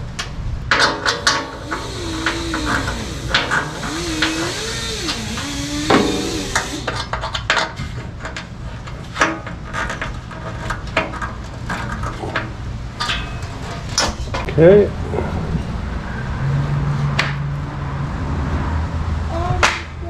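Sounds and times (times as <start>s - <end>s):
power drill motor: 1.4s - 7.1s.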